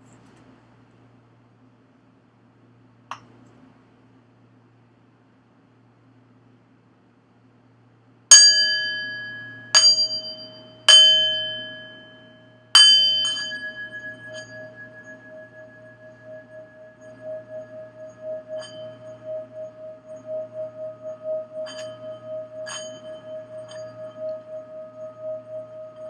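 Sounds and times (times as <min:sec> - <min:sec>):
singing bowl ringing: 0:08.3 - 0:26.0.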